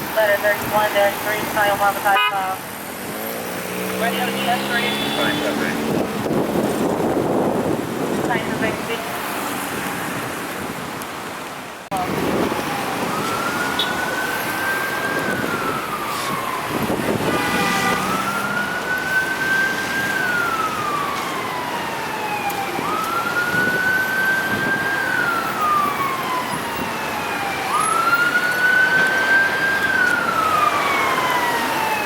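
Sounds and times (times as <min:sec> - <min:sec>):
siren wailing: 0:03.8 - 0:06.2, 0:12.0 - 0:32.0
short horn blast: 0:04.0 - 0:05.8, 0:17.2 - 0:18.3.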